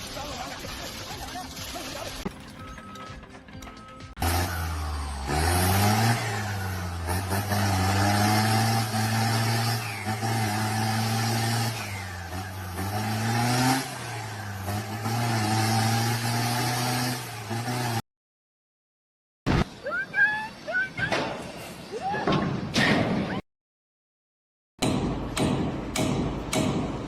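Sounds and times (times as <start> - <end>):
engine running and revving: 4.1 - 18.0.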